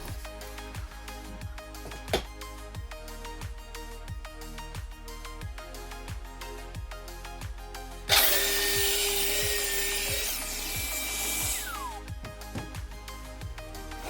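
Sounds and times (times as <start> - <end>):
background music with steady beat: 0.0 - 14.0
power tool cutting: 8.1 - 12.0.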